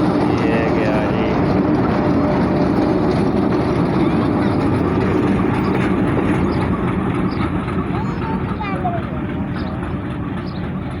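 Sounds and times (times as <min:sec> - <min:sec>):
train wheels rumbling on track: 0:00.0 - 0:11.0.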